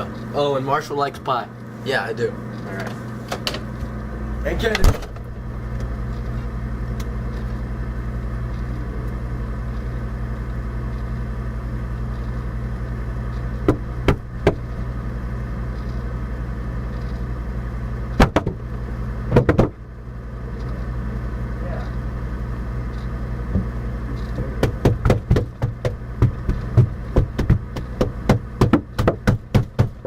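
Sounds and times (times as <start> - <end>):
refrigerator humming: 0.0 - 30.0
short knocks: 24.4 - 30.0.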